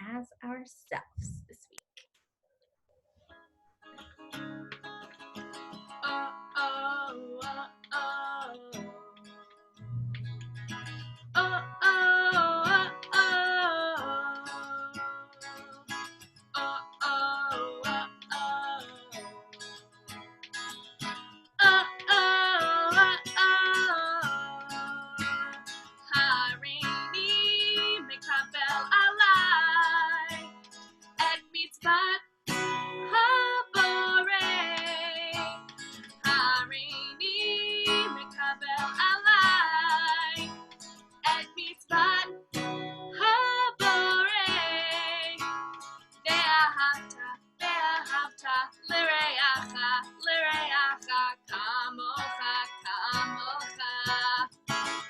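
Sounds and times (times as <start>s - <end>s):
strummed acoustic guitar: 3.8s - 55.0s
person singing with vibrato: 6.0s - 9.1s, 9.8s - 15.9s, 16.6s - 19.4s, 21.6s - 25.5s, 26.1s - 30.5s, 33.0s - 35.6s, 36.2s - 40.6s, 41.2s - 45.5s, 46.3s - 54.6s.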